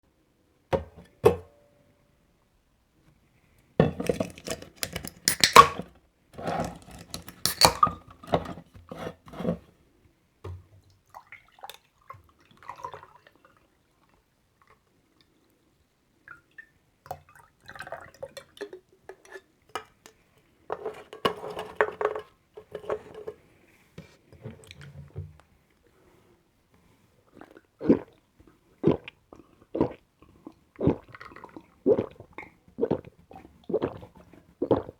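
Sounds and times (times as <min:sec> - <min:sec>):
glassware clinks and taps: 0:07.1 - 0:08.0.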